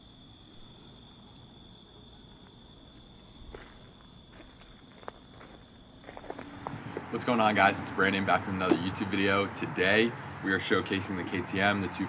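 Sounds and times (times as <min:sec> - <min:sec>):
insects chirping: 0:00.0 - 0:06.8.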